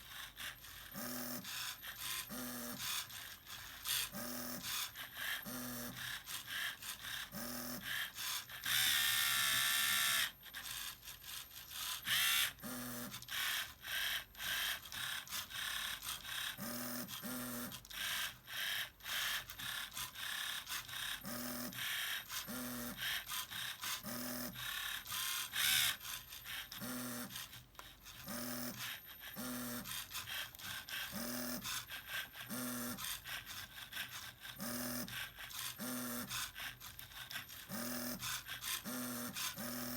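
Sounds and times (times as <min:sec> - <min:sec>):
small electric motors whirring: 0:00.0 - 0:39.9.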